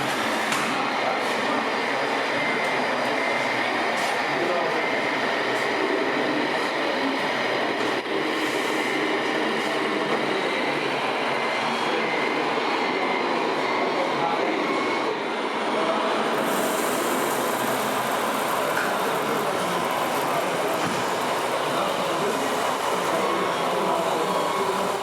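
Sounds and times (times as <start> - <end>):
model trucks running: 16.3 - 25.0.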